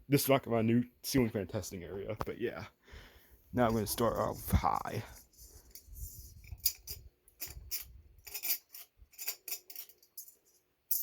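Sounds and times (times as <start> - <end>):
metal pull chain clinking: 6.5 - 11.0.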